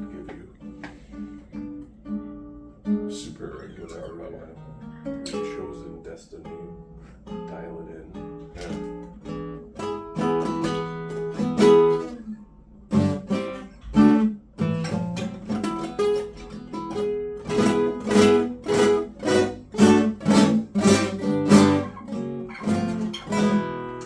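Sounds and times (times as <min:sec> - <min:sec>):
acoustic guitar playing: 0:00.0 - 0:24.0.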